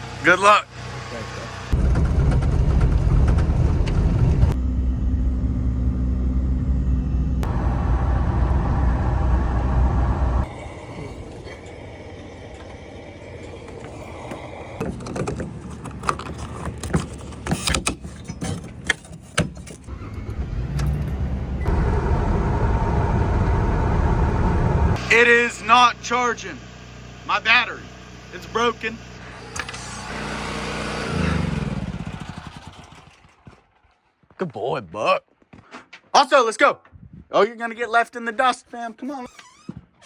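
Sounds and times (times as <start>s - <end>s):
generator running: 0.0s - 19.0s, 19.8s - 34.0s
clicks and clatter of handling: 14.8s - 19.9s.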